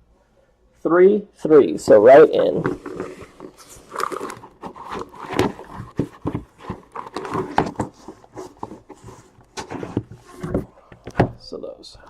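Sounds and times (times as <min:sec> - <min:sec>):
cardboard boxes knocking and scraping: 0:02.6 - 0:11.4.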